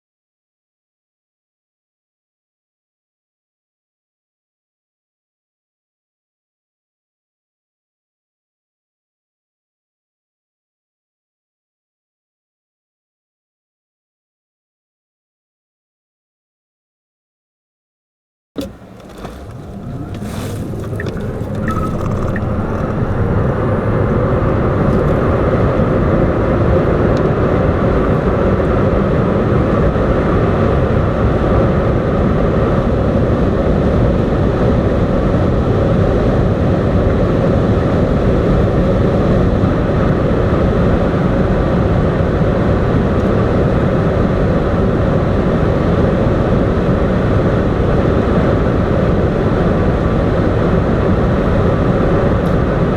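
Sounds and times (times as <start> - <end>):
road and wind noise: 18.6 - 52.9.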